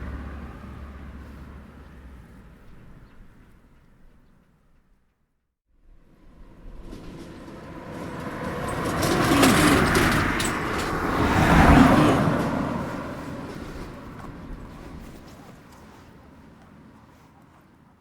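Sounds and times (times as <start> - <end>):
car towing trailer passing: 0.0 - 4.7, 5.8 - 17.2
road noise: 0.0 - 5.2, 5.8 - 18.0
clattering ticks: 6.8 - 15.0.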